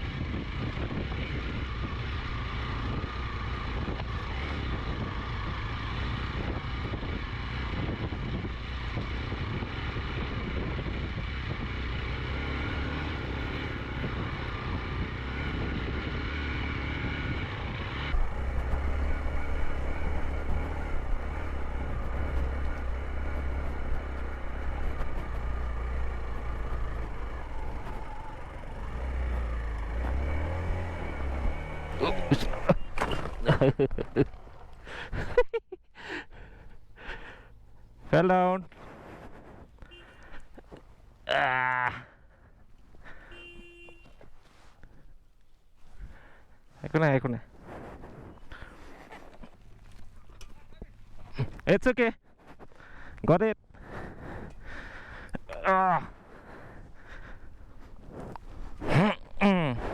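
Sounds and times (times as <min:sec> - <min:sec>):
motorcycle engine running: 0:00.0 - 0:35.4, 0:42.2 - 0:45.1, 0:53.8 - 0:59.9
wind buffeting rumble: 0:00.0 - 0:41.3, 0:45.8 - 0:51.6, 0:52.4 - 0:59.9.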